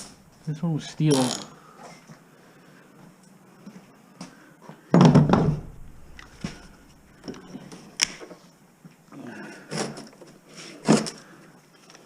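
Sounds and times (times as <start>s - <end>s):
loud knock: 5.0s - 7.4s.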